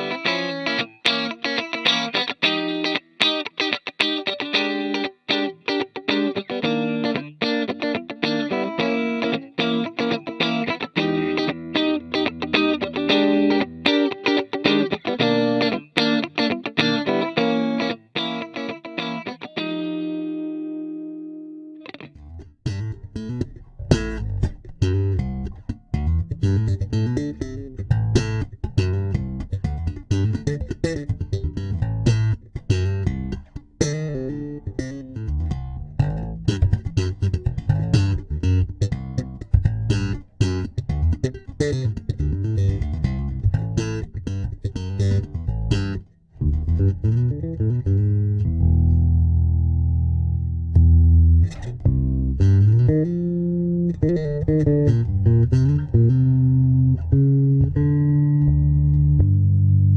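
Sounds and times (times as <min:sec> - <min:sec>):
electric bass guitar plucked notes: 0:00.0 - 0:59.9.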